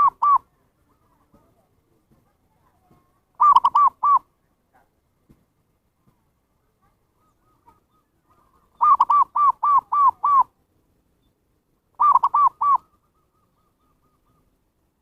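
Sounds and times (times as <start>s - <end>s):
dove cooing: 0.0s - 1.2s, 3.3s - 4.3s, 7.1s - 10.6s, 12.0s - 14.6s.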